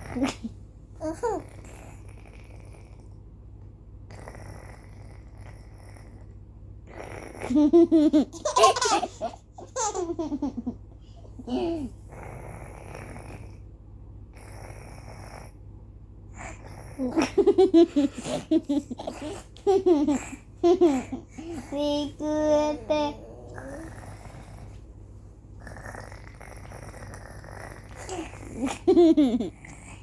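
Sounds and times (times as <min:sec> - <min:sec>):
child laughing: 0:07.6 - 0:10.8
rough snoring breaths: 0:12.0 - 0:13.7, 0:23.3 - 0:24.8, 0:25.6 - 0:28.6.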